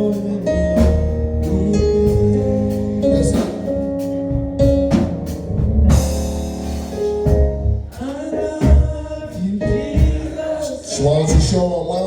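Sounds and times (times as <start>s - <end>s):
person singing: 0.0s - 3.8s, 7.9s - 12.0s
church band music: 0.0s - 12.0s.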